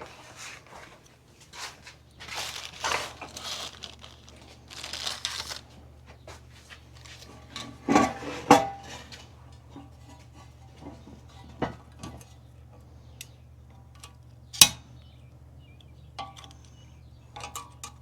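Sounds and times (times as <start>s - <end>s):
rustling handling noises: 0.0s - 9.2s.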